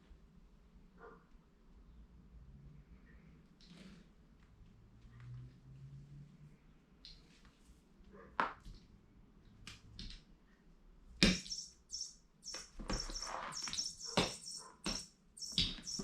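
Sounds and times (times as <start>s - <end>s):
sharp knocks: 11.2s - 11.5s
bird toy chirping: 11.2s - 16.0s.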